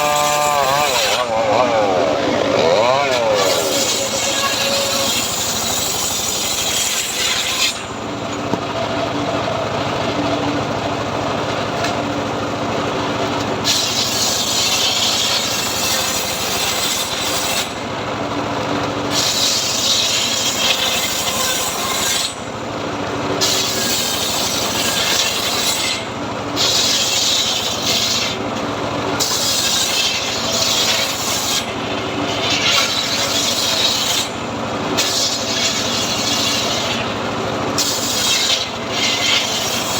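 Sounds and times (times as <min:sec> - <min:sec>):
saw blade rasping through wood: 0:00.0 - 0:08.0, 0:13.6 - 0:17.8, 0:19.1 - 0:22.4, 0:23.4 - 0:28.4, 0:29.2 - 0:39.9
motor-driven saw running: 0:00.0 - 0:10.4, 0:19.0 - 0:39.9.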